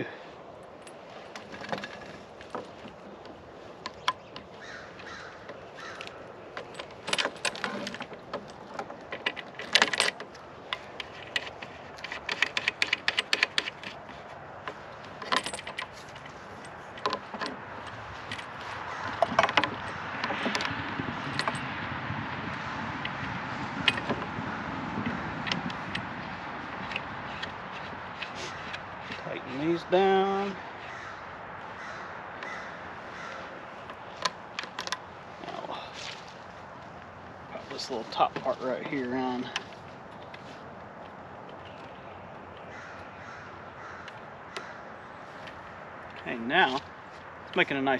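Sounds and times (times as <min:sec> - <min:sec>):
antenna parts clinking and rattling: 0:05.9 - 0:21.8.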